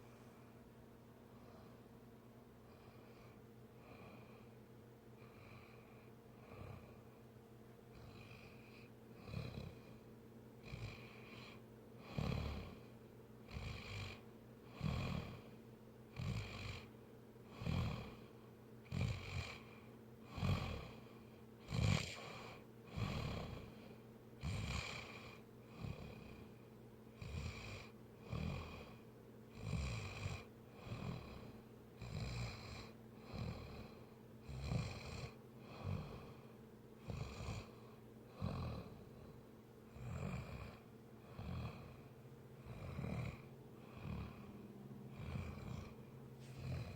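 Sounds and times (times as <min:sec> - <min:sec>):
rough rhythmic snoring: 0:02.6 - 0:04.6, 0:05.2 - 0:07.2, 0:07.9 - 0:46.9.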